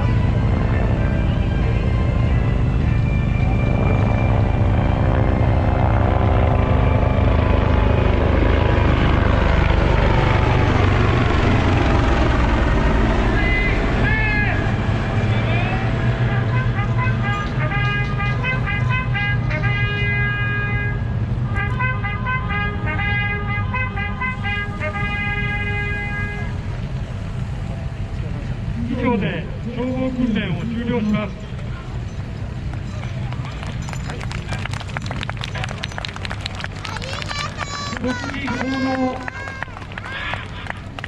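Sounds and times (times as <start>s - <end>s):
helicopter flying over: 0.0s - 41.0s
low engine hum: 0.0s - 41.0s
horn blasts: 13.6s - 26.8s.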